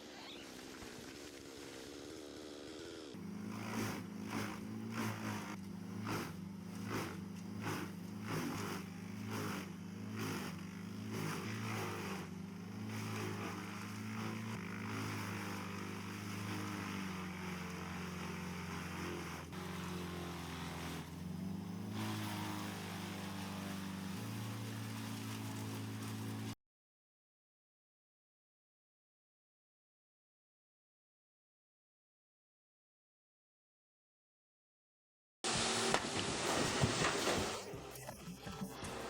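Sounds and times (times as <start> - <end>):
wood chipper chipping tree: 0.3 - 26.6, 35.5 - 39.0
diesel engine under load: 2.0 - 26.6.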